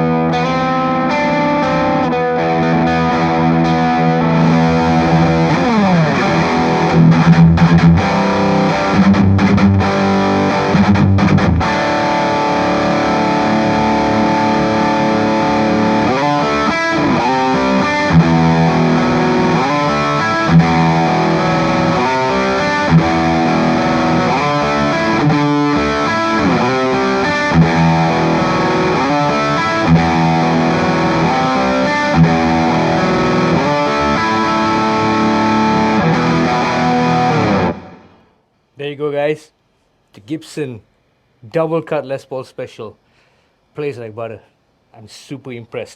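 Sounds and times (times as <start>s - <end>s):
distorted electric guitar riffs: 0.0s - 39.4s.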